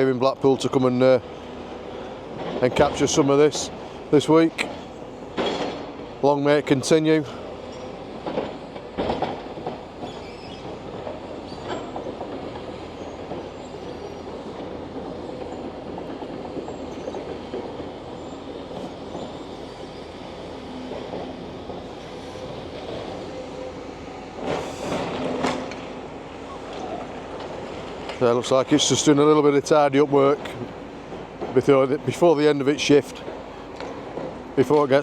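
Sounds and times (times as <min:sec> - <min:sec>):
knocks and clatter: 0:08.2 - 0:12.7.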